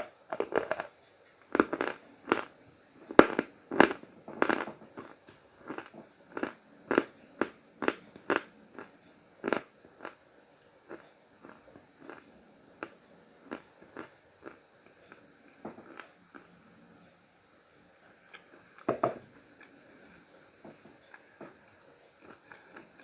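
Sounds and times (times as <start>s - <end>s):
person crunching chalk: 1.5s - 2.5s.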